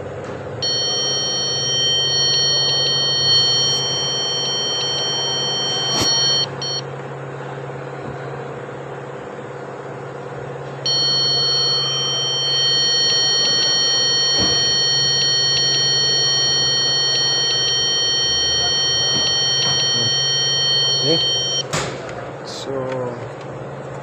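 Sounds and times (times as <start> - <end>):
electronic buzzer tone: 0.6 - 6.8, 10.8 - 21.7
low steady hum: 0.6 - 7.0, 10.7 - 21.6.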